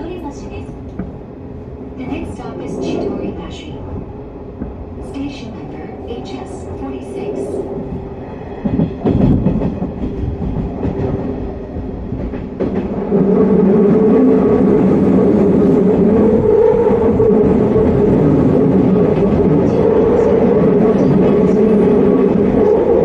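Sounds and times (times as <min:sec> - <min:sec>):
train wheel-on-rail rumble: 0:00.0 - 0:23.0
knocks: 0:08.7 - 0:11.1.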